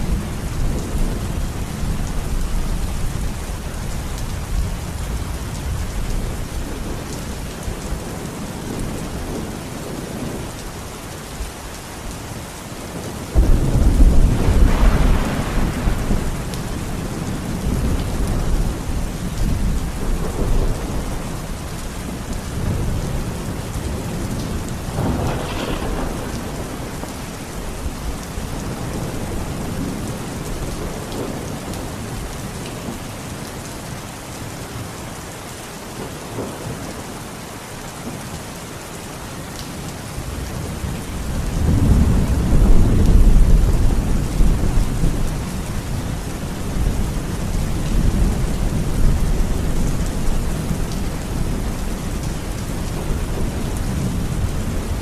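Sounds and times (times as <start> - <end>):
heavy rain: 0.0 - 55.0
rolling thunder: 13.3 - 21.8, 22.6 - 31.6, 40.3 - 51.9.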